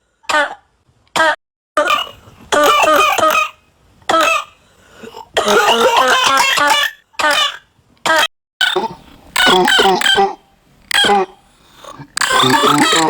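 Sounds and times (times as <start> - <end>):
person coughing: 5.1 - 7.5.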